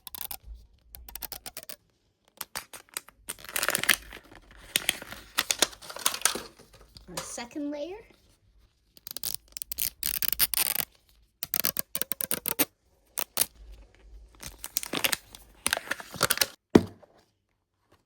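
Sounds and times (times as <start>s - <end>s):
plastic packaging crinkling and tearing: 2.4s - 7.0s, 9.0s - 13.6s, 14.4s - 16.6s.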